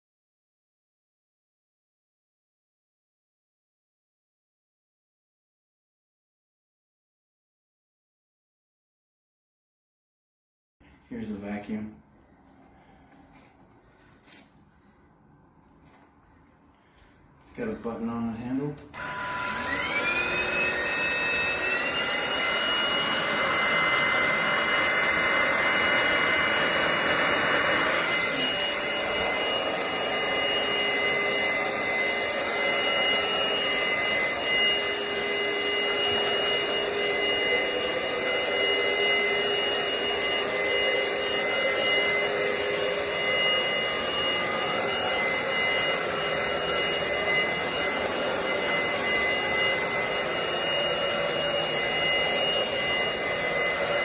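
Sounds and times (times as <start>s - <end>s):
stick vacuum cleaner running: 15.6s - 54.0s
high-pitched motor whine: 19.0s - 54.0s.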